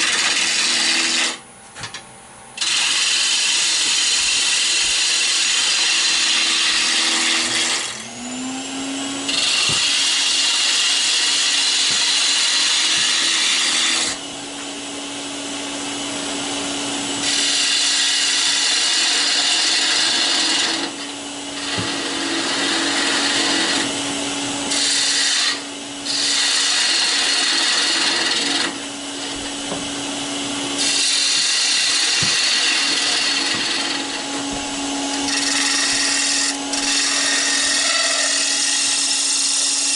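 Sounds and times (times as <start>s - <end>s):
lathe motor hum: 0.0s - 1.4s, 2.6s - 39.9s
turning tool hissing on wood: 21.6s - 24.0s, 24.7s - 28.8s, 30.8s - 34.3s, 35.1s - 39.9s.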